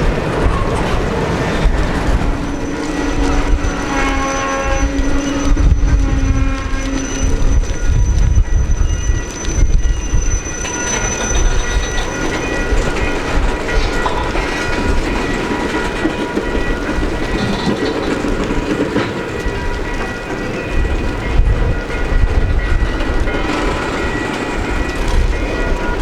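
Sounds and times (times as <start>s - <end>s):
high ringing of wheels on rail: 0.0s - 26.0s
train rumbling past: 0.0s - 26.0s
wheel clicks over rail joints: 10.6s - 20.6s.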